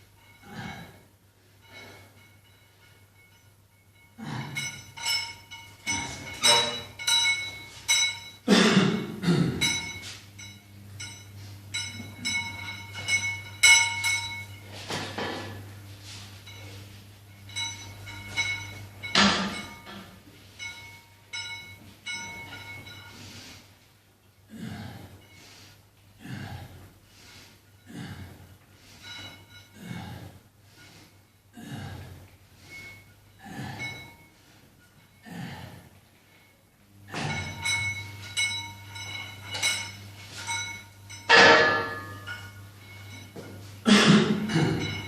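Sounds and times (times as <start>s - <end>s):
gym weights knocking and clinking: 1.6s - 15.6s, 17.4s - 23.1s, 37.1s - 45.0s
ringing metal clang: 1.6s - 15.7s, 16.4s - 23.2s, 37.1s - 45.0s.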